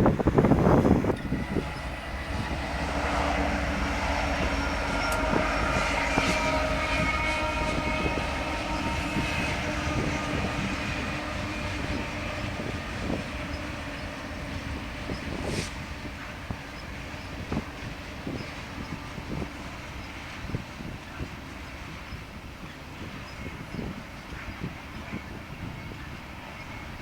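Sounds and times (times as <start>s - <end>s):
train wheel-on-rail noise: 0.0s - 27.0s.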